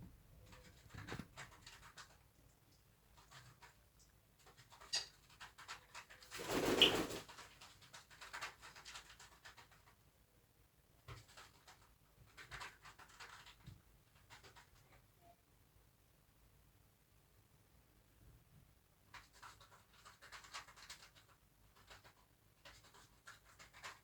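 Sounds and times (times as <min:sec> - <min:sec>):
parrot clicks and mutterings: 0:04.4 - 0:06.2.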